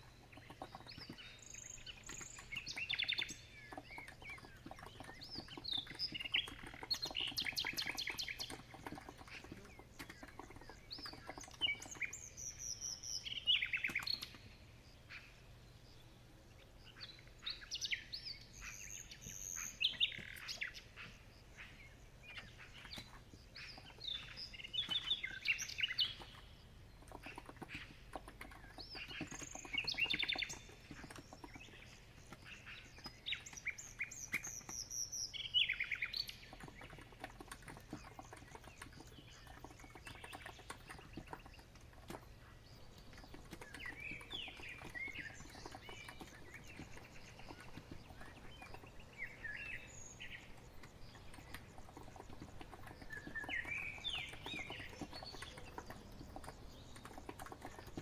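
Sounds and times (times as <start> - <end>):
keyboard typing: 0.0 - 12.2, 26.0 - 34.8, 36.4 - 58.0
songbirds chirping: 0.0 - 58.0.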